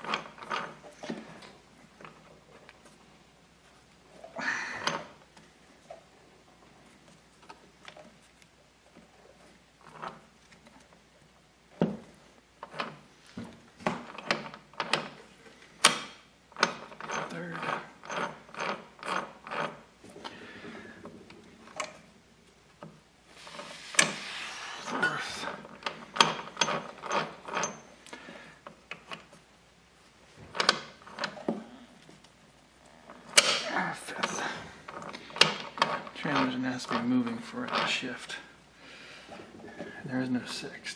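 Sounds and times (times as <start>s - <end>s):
metallic gear clicks and clunks: 30.5s - 31.5s.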